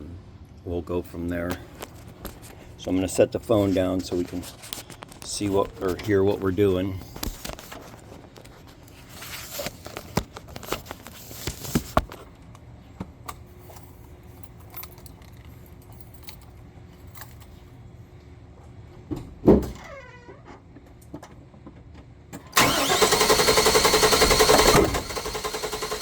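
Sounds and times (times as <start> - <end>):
keys jingling: 14.4 - 17.6.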